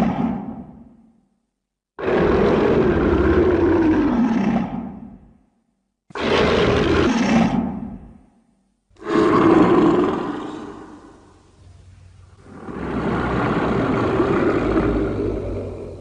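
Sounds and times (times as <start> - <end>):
monster roar: 9.0 - 11.3, 12.4 - 16.0.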